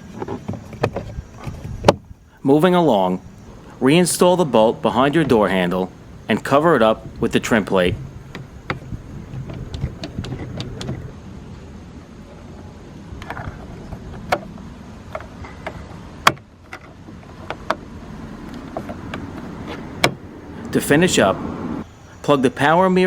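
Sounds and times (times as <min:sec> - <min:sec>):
low rumble: 0:04.8 - 0:11.1.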